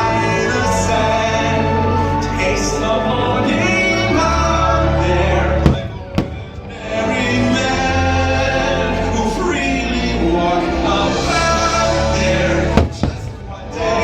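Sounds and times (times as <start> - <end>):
orchestral music with singing: 0.0 - 14.0
firework bangs: 5.7 - 6.6, 12.8 - 13.5.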